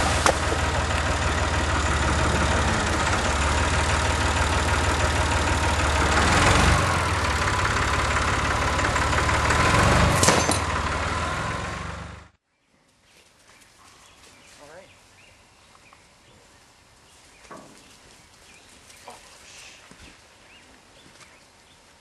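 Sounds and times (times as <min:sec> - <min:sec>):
tractor engine running: 0:00.0 - 0:12.4.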